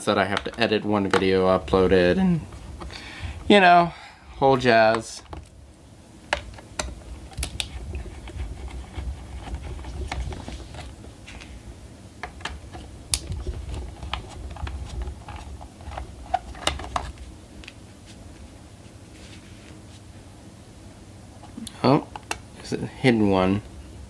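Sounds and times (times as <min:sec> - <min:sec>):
low handling rumble: 0:00.0 - 0:05.9.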